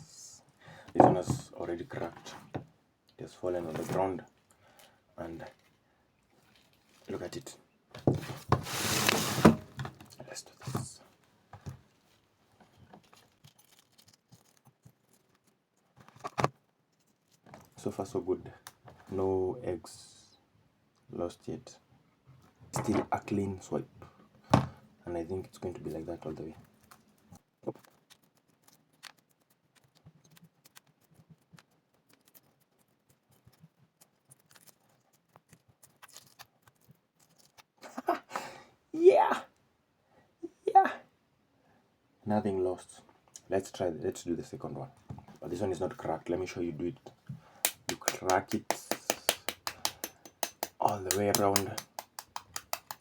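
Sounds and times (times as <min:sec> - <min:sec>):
egg shell crackling as peeled: 0:13.0 - 0:15.8, 0:26.6 - 0:37.8, 0:47.6 - 0:53.0
eggshell cracking while peeled: 0:47.6 - 0:53.0.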